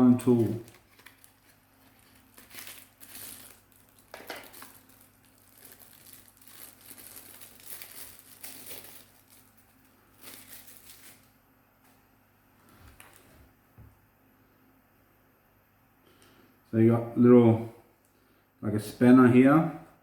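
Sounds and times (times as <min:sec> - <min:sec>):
packaging crinkling: 0:00.0 - 0:11.3.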